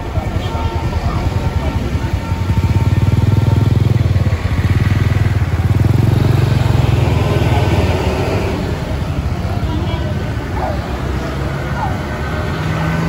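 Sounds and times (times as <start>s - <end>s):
diesel bus engine rumbling: 0.0s - 13.0s.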